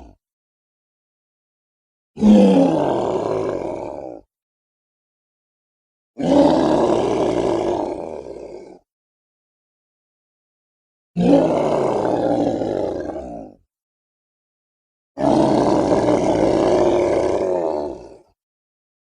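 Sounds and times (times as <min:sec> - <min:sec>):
giant ape roaring: 0:02.2 - 0:04.3, 0:06.2 - 0:08.8, 0:11.2 - 0:13.6, 0:15.2 - 0:18.4.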